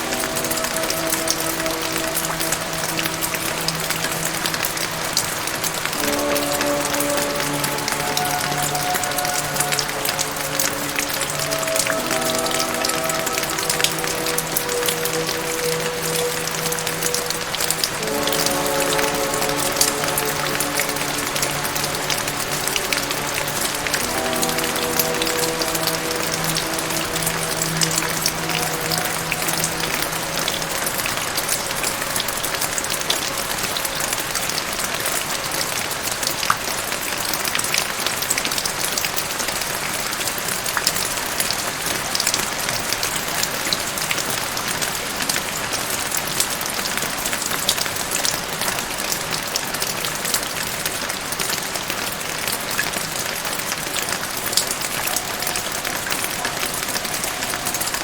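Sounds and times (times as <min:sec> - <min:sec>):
sharp raindrop hits: 0:00.0 - 0:36.3
soft held music notes: 0:00.0 - 0:58.0
steady rain hiss: 0:00.0 - 0:58.0.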